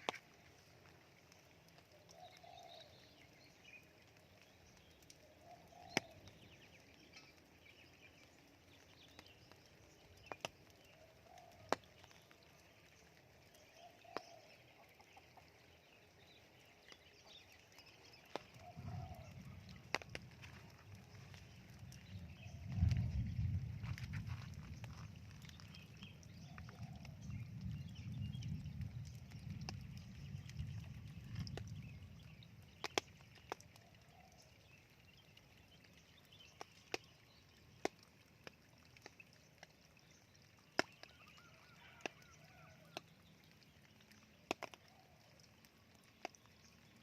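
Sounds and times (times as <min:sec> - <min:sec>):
raindrops dripping: 0:00.0 - 0:47.0
faint bird calls: 0:17.2 - 0:21.8.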